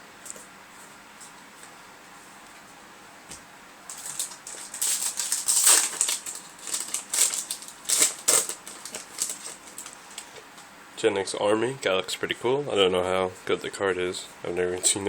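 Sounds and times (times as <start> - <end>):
foil wrapper crinkling and tearing: 3.9 - 10.4.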